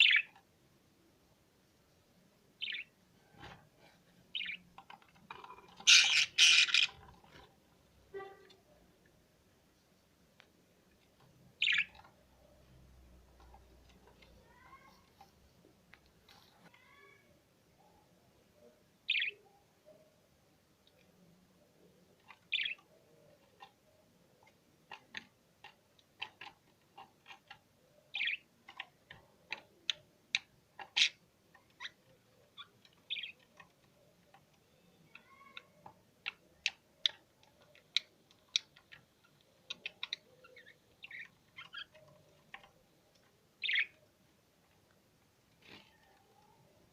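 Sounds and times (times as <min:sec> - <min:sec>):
cage birds chirping: 0:00.0 - 0:01.0, 0:01.9 - 0:09.7, 0:10.6 - 0:46.9.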